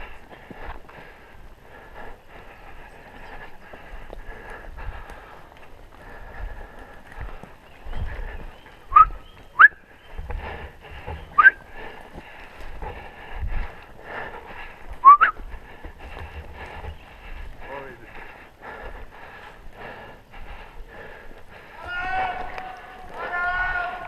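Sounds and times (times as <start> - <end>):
sharp rising whistles: 8.9 - 9.8, 11.3 - 11.6.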